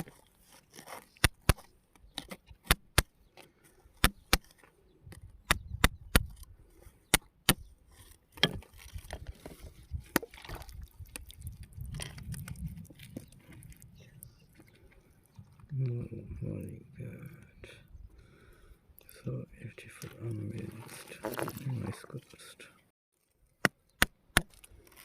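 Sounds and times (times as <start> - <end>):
rustling and handling noise: 0.0 - 2.7, 7.8 - 15.7, 20.0 - 22.4, 24.6 - 25.0.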